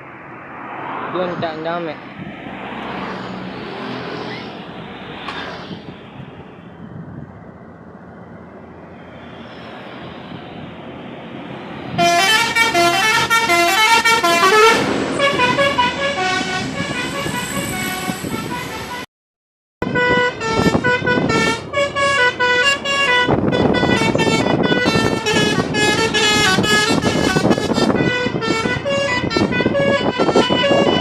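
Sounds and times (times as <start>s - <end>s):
passing road traffic: 0.0s - 19.1s, 19.8s - 31.0s
musical bus horn melody: 11.9s - 19.1s, 19.8s - 31.0s.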